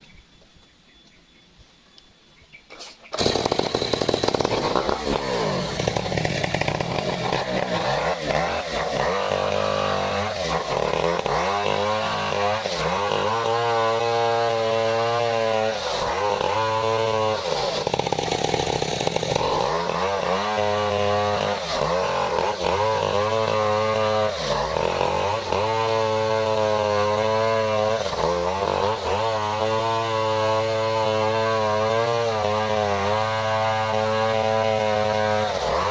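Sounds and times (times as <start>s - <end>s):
chainsaw cutting through trunk: 3.1s - 35.9s.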